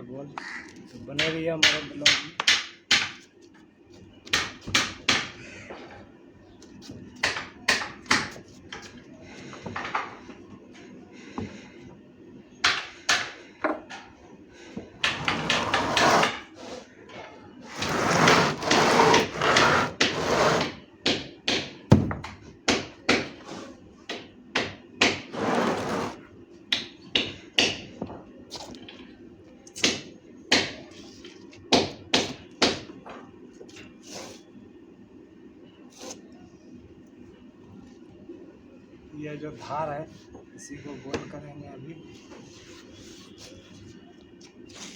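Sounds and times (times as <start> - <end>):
wood and tools knocking: 15.0 - 16.5, 17.7 - 22.8
scraping sounds: 15.2 - 16.9, 17.7 - 20.7, 25.3 - 26.2.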